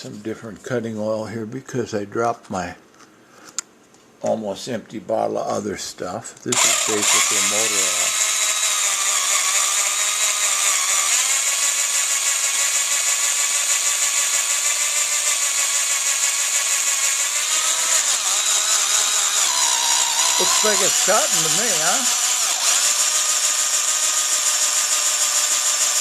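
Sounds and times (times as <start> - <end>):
cordless drill grinding into brass: 6.5 - 26.0.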